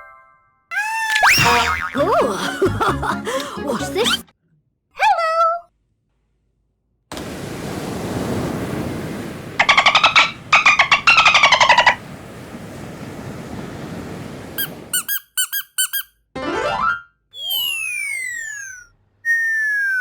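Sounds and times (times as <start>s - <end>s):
cartoon fluttering squeaks: 0.7s - 2.0s, 14.9s - 16.1s, 17.4s - 20.0s
steady rushing hiss: 7.2s - 14.9s.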